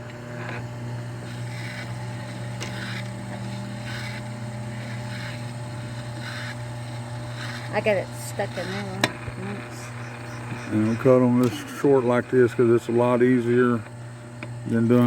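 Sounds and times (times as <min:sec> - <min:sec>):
insulation being cut rasp: 0:00.0 - 0:15.0
machine motor hum: 0:00.0 - 0:15.0.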